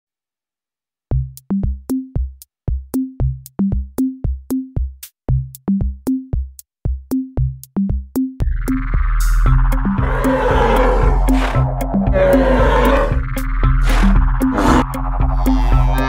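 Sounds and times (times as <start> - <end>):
drum machine beat: 1.1 - 8.5.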